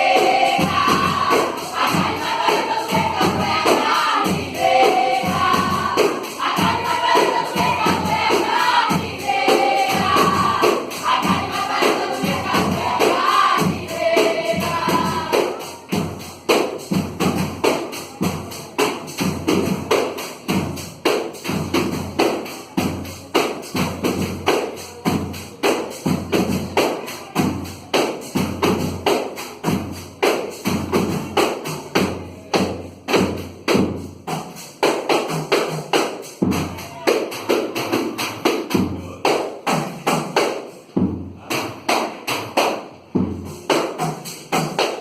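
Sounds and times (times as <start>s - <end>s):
voices singing: 0.0s - 16.6s, 41.3s - 42.4s
percussion music with drum thumps: 0.0s - 45.0s.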